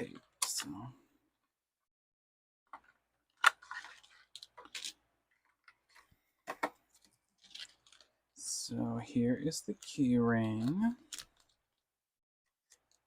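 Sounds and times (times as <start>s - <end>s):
packaging rustling: 6.8s - 8.2s, 9.7s - 11.8s.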